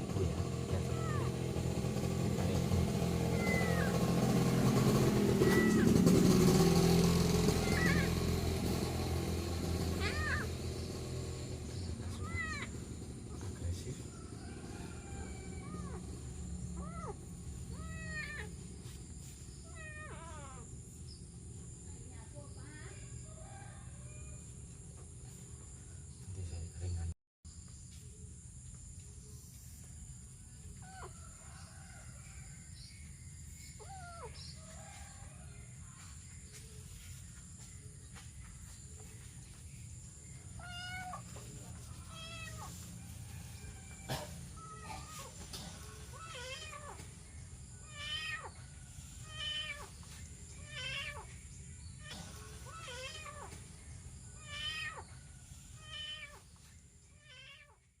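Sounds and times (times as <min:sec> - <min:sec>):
kitten meowing: 0:03.3 - 0:03.9, 0:40.6 - 0:41.4, 0:42.0 - 0:42.7, 0:46.1 - 0:47.0, 0:47.8 - 0:48.6, 0:50.6 - 0:51.3, 0:52.0 - 0:53.6, 0:54.4 - 0:55.0, 0:57.2 - 0:57.8.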